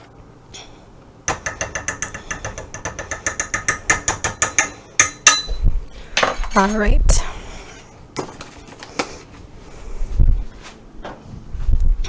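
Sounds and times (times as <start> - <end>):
metal utensil clinking on saucepan: 1.3 - 5.6.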